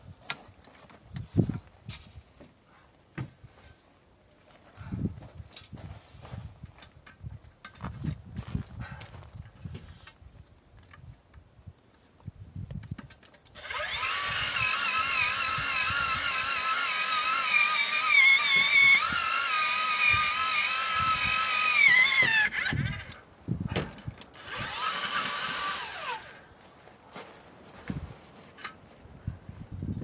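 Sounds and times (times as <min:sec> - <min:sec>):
power drill boring into soil: 0:13.5 - 0:23.2, 0:24.3 - 0:26.4.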